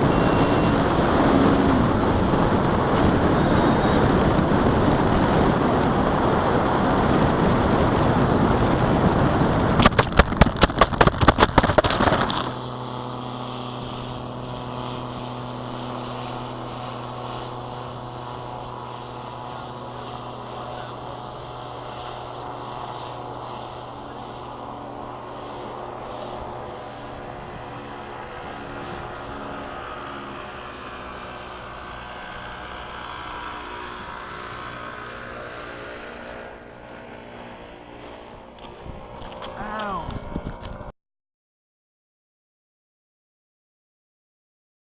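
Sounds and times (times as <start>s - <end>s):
steady hum of held tones: 0.0s - 5.6s, 12.7s - 40.9s
wind rushing over microphone: 0.0s - 40.9s
sharp knocks: 9.8s - 12.5s.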